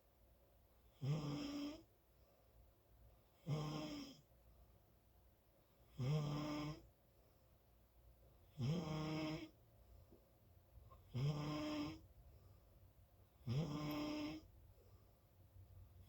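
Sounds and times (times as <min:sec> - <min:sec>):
loud snoring: 0:01.0 - 0:01.8, 0:03.4 - 0:04.2, 0:05.9 - 0:06.8, 0:08.6 - 0:09.5, 0:11.1 - 0:12.0, 0:13.4 - 0:14.5.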